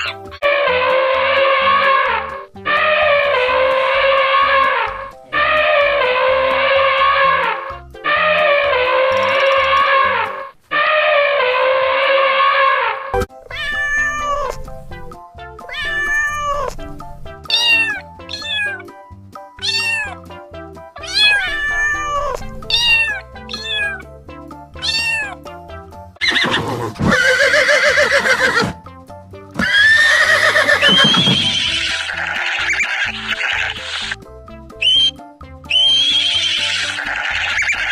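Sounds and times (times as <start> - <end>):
background music: 0.0 - 10.8, 13.1 - 37.9
animal calls bending in pitch: 29.6 - 34.2.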